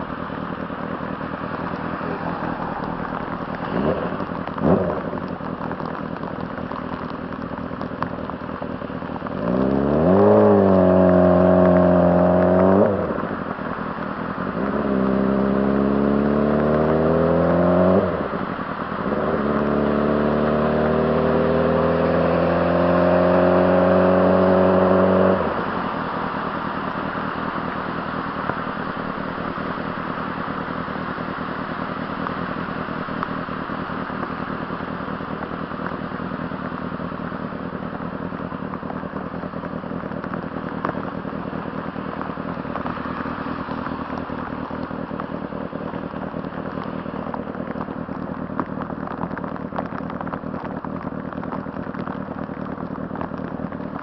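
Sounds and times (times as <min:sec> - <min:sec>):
rushing noise with crackle: 0:00.0 - 0:54.0
motorcycle engine revving: 0:00.8 - 0:31.2.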